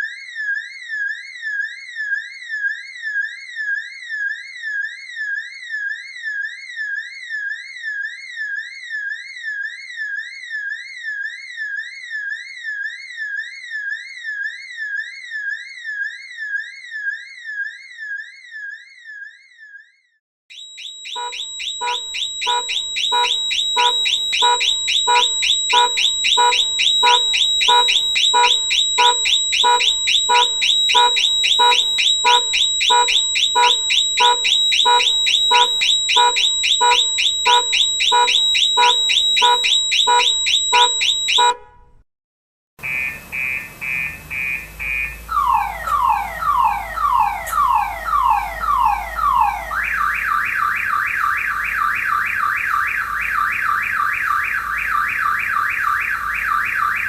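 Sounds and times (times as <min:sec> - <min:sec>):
car alarm electronic chirping: 0:20.5 - 0:42.0, 0:42.8 - 0:57.0
car alarm warbling and whooping: 0:20.5 - 0:42.0, 0:42.8 - 0:57.0.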